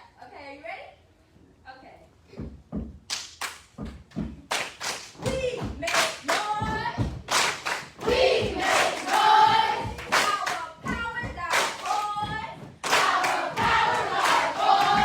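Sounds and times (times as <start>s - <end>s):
hand claps: 3.0s - 15.0s
voices chanting: 8.0s - 11.0s, 11.6s - 15.0s.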